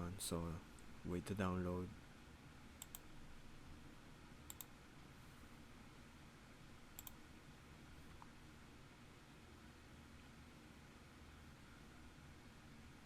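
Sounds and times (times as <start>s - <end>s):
low steady hum: 0.0s - 13.0s
computer mouse clicks: 2.8s - 3.1s, 4.5s - 4.8s, 6.9s - 7.2s.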